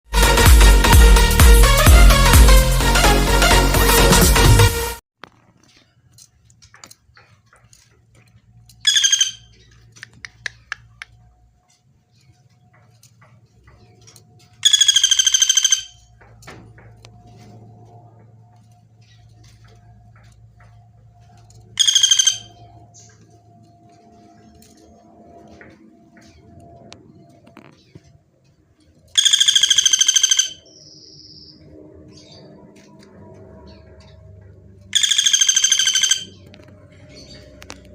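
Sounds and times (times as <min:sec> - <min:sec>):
woodpecker rattling calls: 0:08.7 - 0:11.3, 0:14.5 - 0:16.2, 0:21.8 - 0:23.2, 0:29.1 - 0:31.5, 0:34.9 - 0:37.9.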